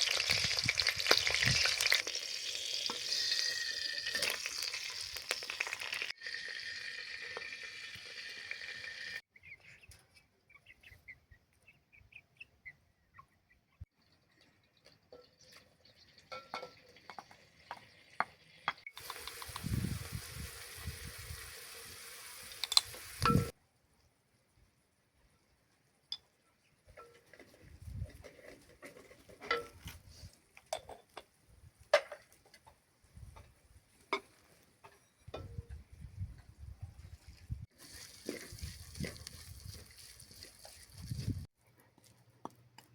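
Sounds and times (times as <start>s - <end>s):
small birds chirping: 9.3s - 16.8s.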